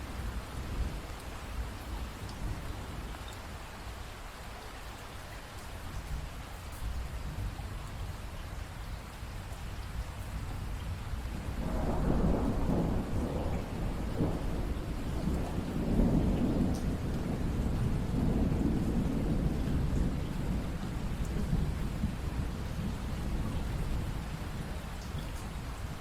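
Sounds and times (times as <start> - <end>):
steady rain: 0.0 - 26.0
low thunder rumble: 10.6 - 26.0.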